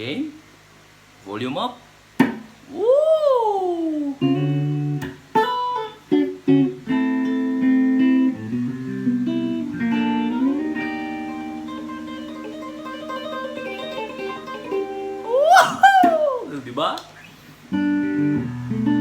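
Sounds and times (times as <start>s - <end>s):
electric guitar chords: 4.2s - 15.3s, 17.7s - 19.0s.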